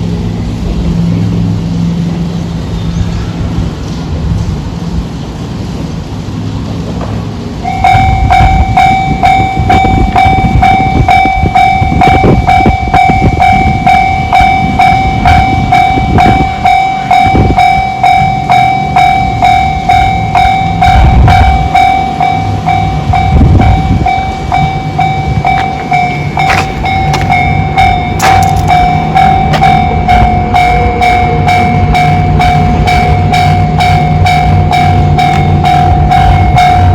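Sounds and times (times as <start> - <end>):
level crossing alarm clanging: 7.6 - 36.9.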